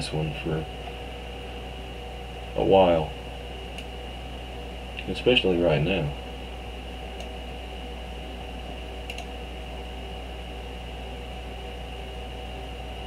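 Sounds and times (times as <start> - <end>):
electrical hum and hiss: 0.0 - 13.0
faint high whine: 0.0 - 13.0
faint clicks: 9.0 - 9.3.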